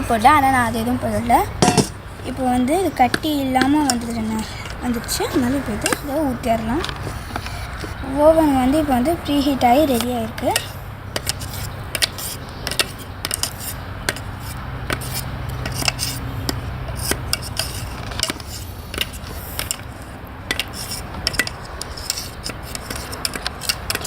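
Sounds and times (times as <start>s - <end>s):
low steady hum: 0.0s - 22.9s
utensil scraping bowl and pan: 0.0s - 24.0s.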